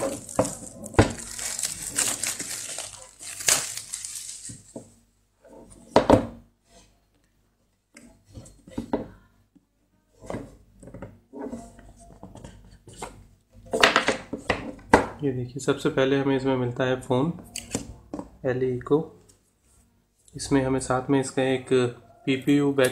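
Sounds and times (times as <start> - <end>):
packaging rustling: 0.0 - 4.8.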